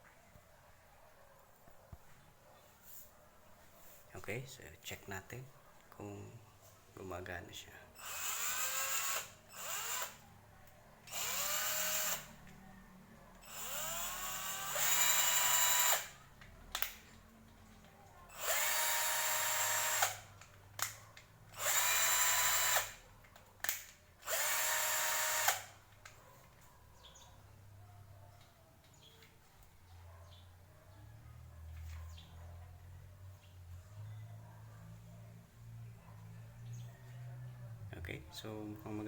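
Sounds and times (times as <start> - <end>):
cordless drill whining: 8.0 - 10.2, 11.1 - 12.4, 13.4 - 16.2, 18.3 - 20.3, 21.6 - 23.0, 23.6 - 25.8.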